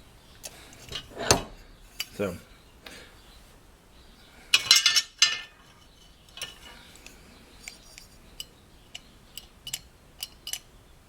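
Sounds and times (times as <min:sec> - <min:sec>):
small metal parts rattling: 0:04.5 - 0:08.2, 0:08.9 - 0:10.7.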